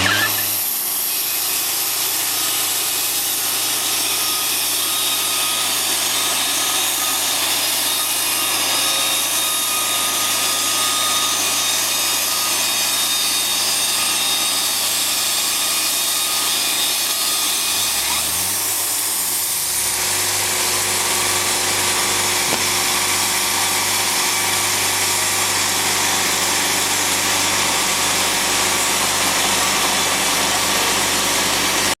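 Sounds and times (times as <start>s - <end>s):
sawmill saw cutting lumber: 0.0s - 32.0s.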